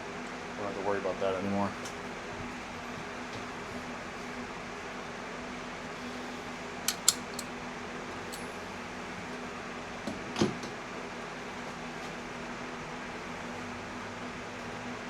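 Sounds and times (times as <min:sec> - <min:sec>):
steady fan-like hum: 0:00.0 - 0:15.0
sharp light clicks and clinks: 0:06.9 - 0:07.5.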